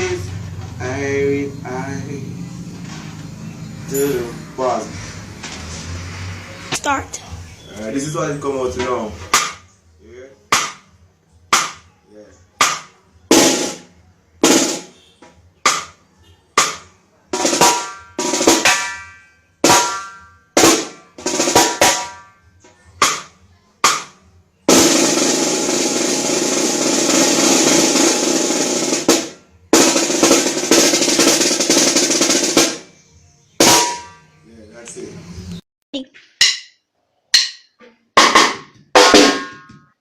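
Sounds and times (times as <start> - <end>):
snare drum strikes: 9.2 - 9.6, 10.5 - 10.9, 11.5 - 11.8, 12.6 - 15.0, 15.6 - 16.0, 16.6 - 16.8, 17.4 - 19.0, 19.6 - 22.2, 23.0 - 32.9, 33.6 - 34.2, 38.2 - 39.7
snare drum roll: 24.7 - 32.8.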